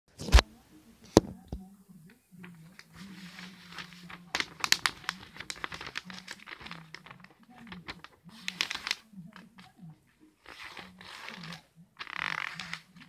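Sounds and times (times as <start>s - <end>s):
faint low voice: 0.2s - 13.0s
quick clicks and crinkly rustles: 2.4s - 9.7s.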